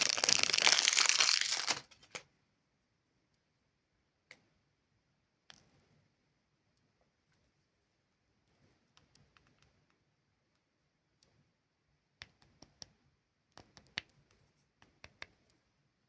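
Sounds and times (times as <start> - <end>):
plastic packaging clicks: 0.0 - 2.2.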